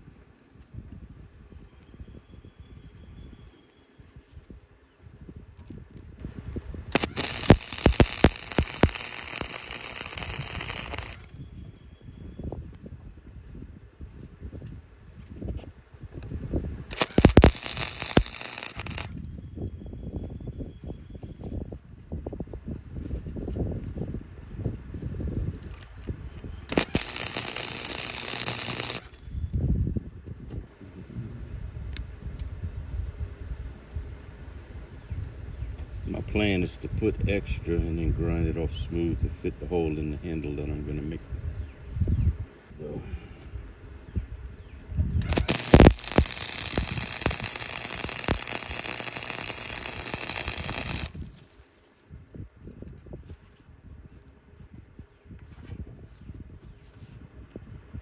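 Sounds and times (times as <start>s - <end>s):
small ticks: 6.9s - 11.3s, 16.9s - 19.1s, 26.7s - 29.2s, 45.2s - 51.2s
welding arc crackling and hissing: 6.9s - 11.4s, 16.9s - 19.3s, 26.7s - 29.6s, 45.2s - 51.5s
low rumbling: 26.7s - 48.9s.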